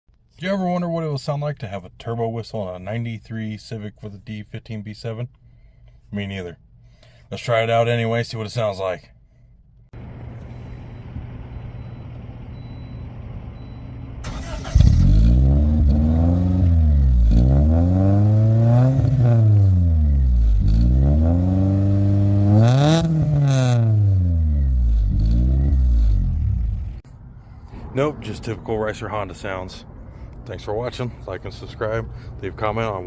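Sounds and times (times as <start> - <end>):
car engine idling and revving: 9.9 - 28.1.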